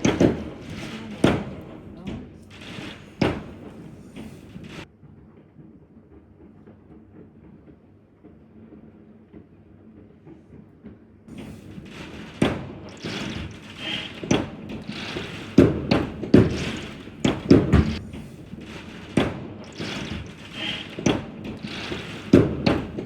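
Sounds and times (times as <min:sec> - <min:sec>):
irregular thumps and bangs: 0:00.0 - 0:04.9, 0:11.3 - 0:23.0.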